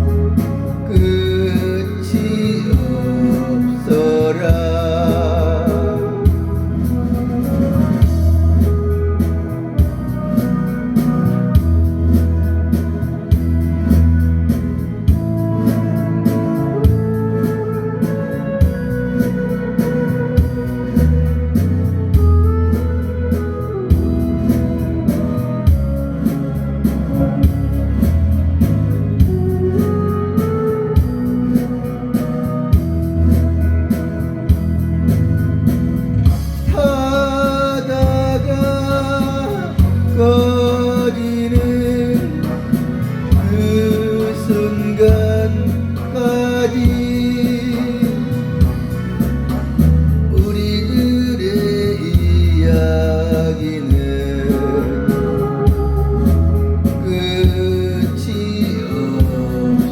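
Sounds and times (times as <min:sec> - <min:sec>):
person singing with vibrato: 0:00.0 - 0:13.9, 0:36.4 - 0:59.9
backing track with bass and guitar: 0:00.0 - 0:59.9.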